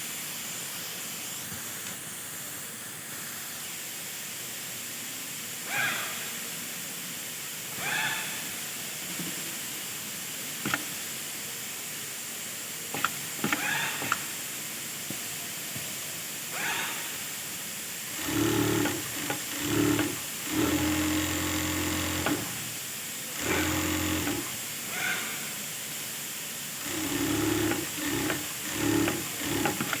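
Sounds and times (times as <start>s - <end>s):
steady hiss: 0.0s - 30.0s
sewing machine stitching: 12.9s - 14.3s, 18.1s - 24.8s, 26.8s - 30.0s.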